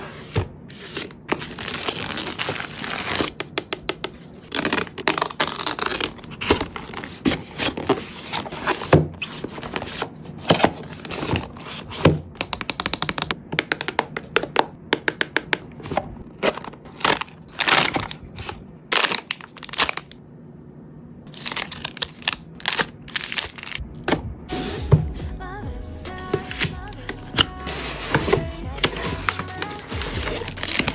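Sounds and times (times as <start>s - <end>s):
packaging crinkling and tearing: 1.3s - 3.4s, 4.4s - 7.7s, 16.3s - 20.2s, 21.3s - 23.8s, 28.8s - 30.9s.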